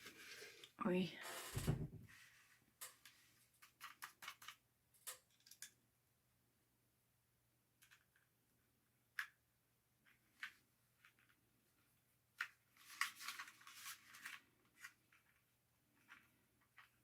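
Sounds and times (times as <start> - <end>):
plastic scraping and rustling: 0.0 - 0.8, 12.4 - 17.0.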